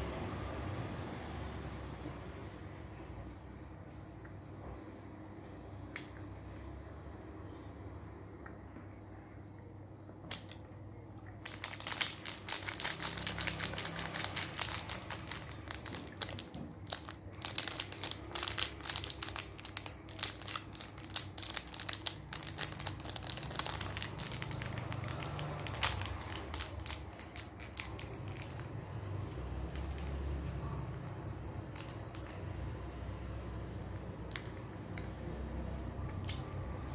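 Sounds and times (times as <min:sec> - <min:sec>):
plastic wrapping crinkling: 0:11.4 - 0:32.6.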